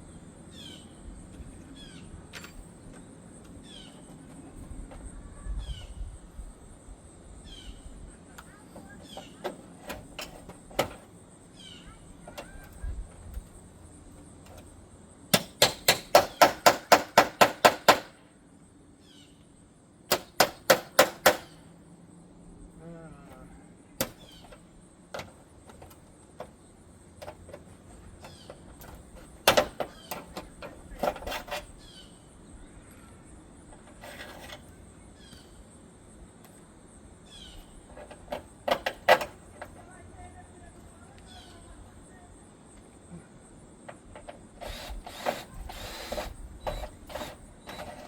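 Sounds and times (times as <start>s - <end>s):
hammer striking metal gutter: 15.3s - 18.2s, 20.1s - 21.5s, 29.4s - 31.4s.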